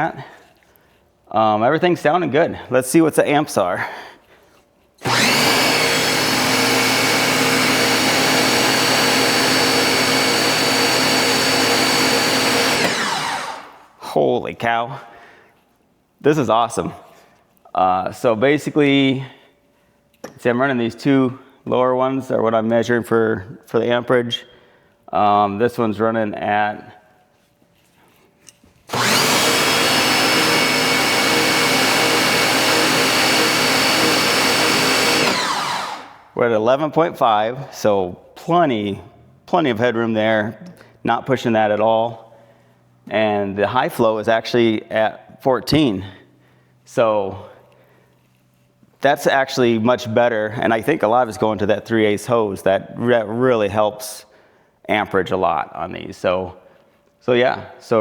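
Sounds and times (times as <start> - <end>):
electric pressure washers running: 5.0 - 13.8, 28.9 - 36.3.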